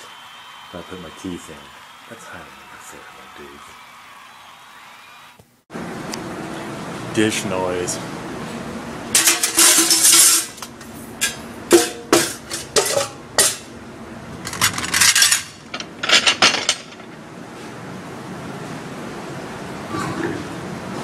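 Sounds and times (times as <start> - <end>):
dishes and cutlery clattering: 9.2 - 13.7, 14.5 - 17.2.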